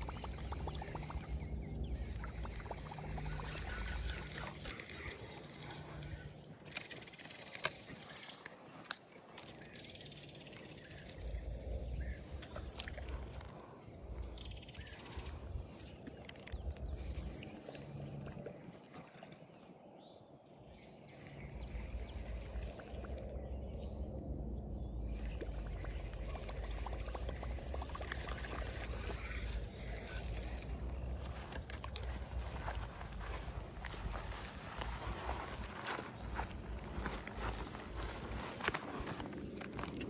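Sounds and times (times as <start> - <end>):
high-pitched hum: 0.0 - 6.5, 21.5 - 40.0
small clicks and rustles: 3.2 - 11.4, 25.2 - 35.0
low rumble: 21.4 - 40.0.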